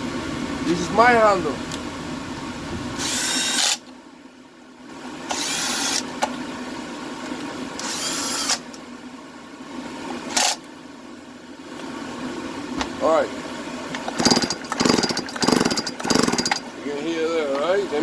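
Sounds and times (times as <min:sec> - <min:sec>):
chainsaw recoil starter whirring: 0:03.0 - 0:03.9, 0:05.2 - 0:06.2, 0:07.8 - 0:08.7, 0:14.0 - 0:16.7.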